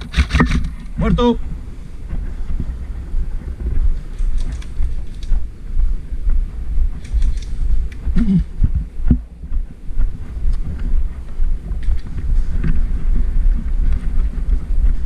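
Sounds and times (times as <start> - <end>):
low rumbling wind: 0.0 - 15.0
microphone handling noise: 0.0 - 15.0
sharp clicks: 4.1 - 5.4, 7.0 - 8.0.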